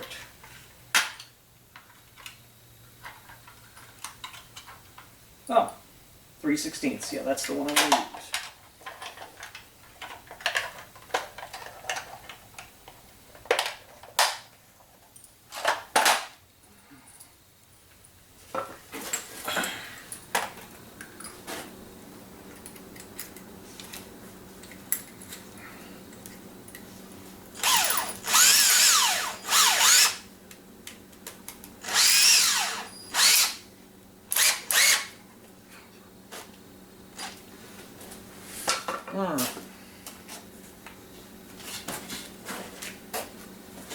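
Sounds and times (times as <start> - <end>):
knocks and clatter of handling: 7.6 - 12.5
power drill boring into wood: 27.6 - 30.2, 31.8 - 33.6, 34.3 - 35.1.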